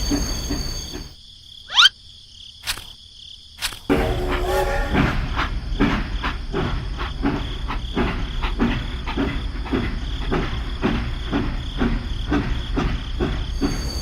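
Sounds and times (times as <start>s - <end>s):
regular chirping pulse: 0.0s - 2.0s.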